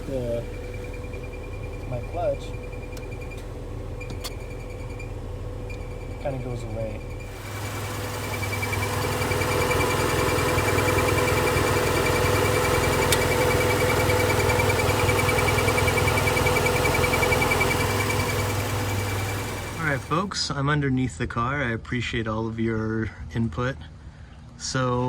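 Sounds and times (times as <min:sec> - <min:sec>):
high-pitched chirping from clutch: 0:00.0 - 0:20.2
car engine idling: 0:00.0 - 0:20.3
click: 0:13.1 - 0:13.3.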